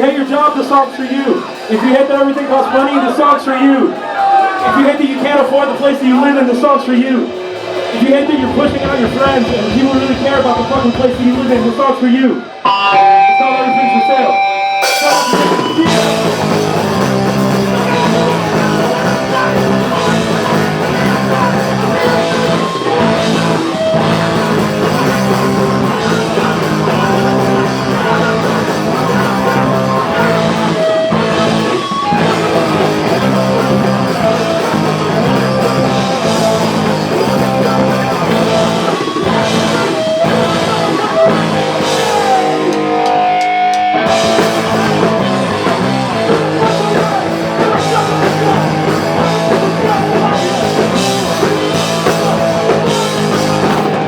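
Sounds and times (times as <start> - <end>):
live punk band playing: 3.8 - 54.0.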